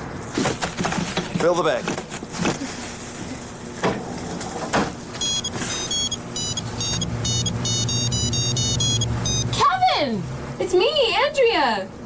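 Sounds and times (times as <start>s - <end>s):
low steady hum: 5.0s - 12.0s
phone ringtone melody: 5.2s - 9.6s.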